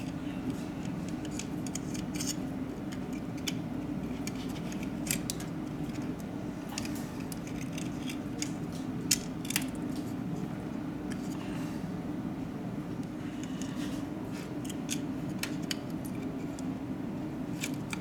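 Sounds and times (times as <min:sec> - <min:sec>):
small tools clicking on phone parts: 0:00.8 - 0:09.8.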